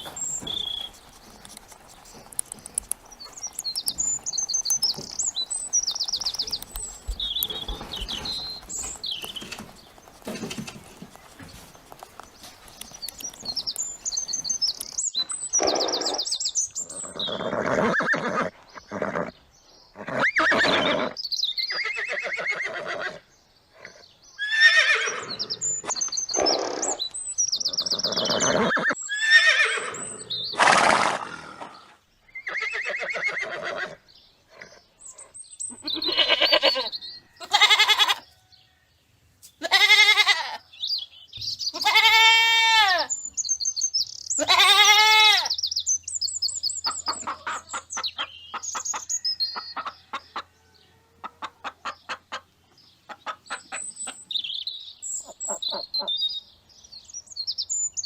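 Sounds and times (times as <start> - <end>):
livestock bleating: 35.7 - 38.3, 39.6 - 40.6, 41.7 - 43.1, 44.4 - 45.5.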